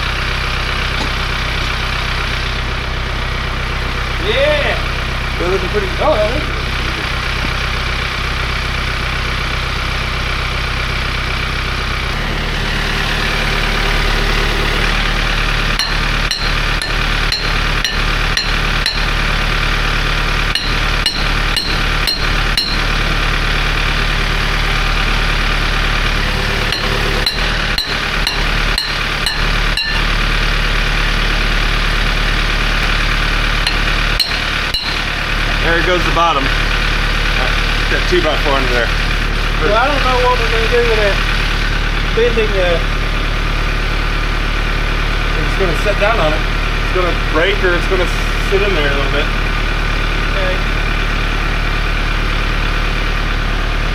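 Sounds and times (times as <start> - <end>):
engine running: 0.0 - 53.9
sharp knocks: 15.8 - 19.2, 20.5 - 23.0, 26.7 - 30.2, 33.7 - 35.2.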